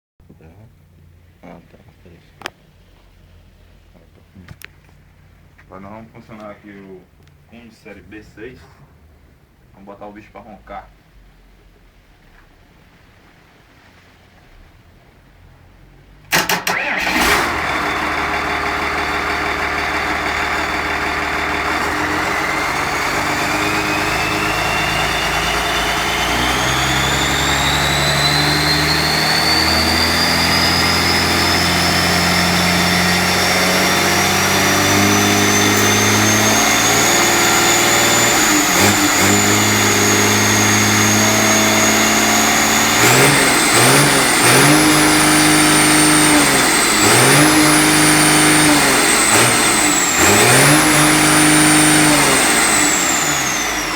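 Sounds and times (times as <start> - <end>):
diesel engine revving: 16.3 - 53.9
turbocharger whine: 16.3 - 53.9.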